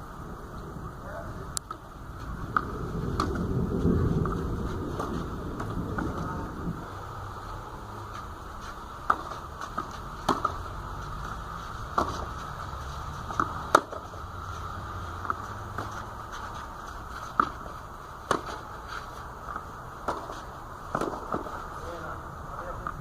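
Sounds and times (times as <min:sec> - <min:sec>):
steady rain hiss: 0:00.0 - 0:23.0.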